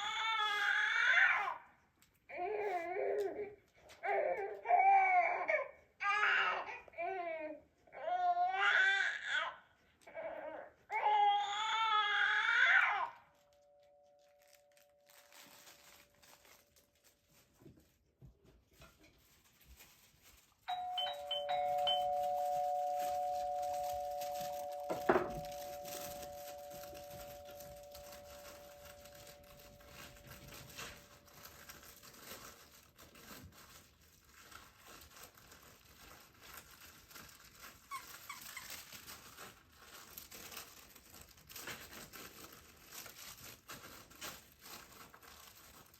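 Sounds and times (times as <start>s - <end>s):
baby crying: 0.0s - 1.6s, 2.3s - 13.2s
faint crinkling rustles: 13.1s - 45.9s
two-tone doorbell chime: 20.7s - 31.2s.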